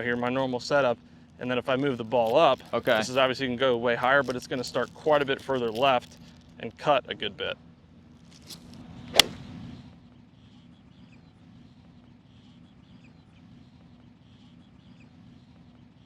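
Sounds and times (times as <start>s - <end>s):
golf club striking ball: 9.1s - 9.5s.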